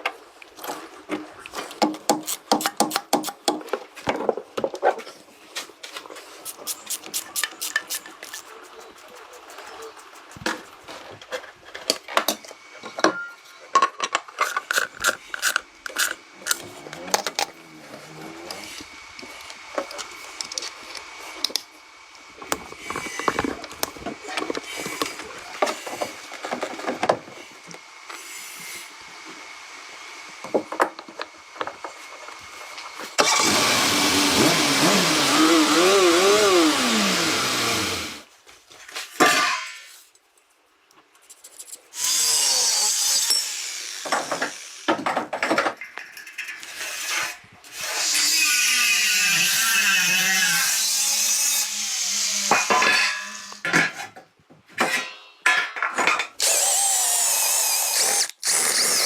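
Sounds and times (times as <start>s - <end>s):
motor running: 33.2s - 38.2s.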